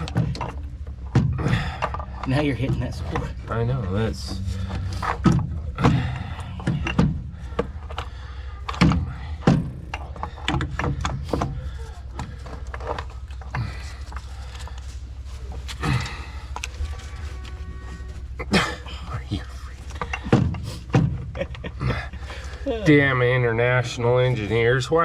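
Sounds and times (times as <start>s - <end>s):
metal tools knocking and clanking: 0.0s - 11.6s
steady low hum: 0.0s - 25.0s.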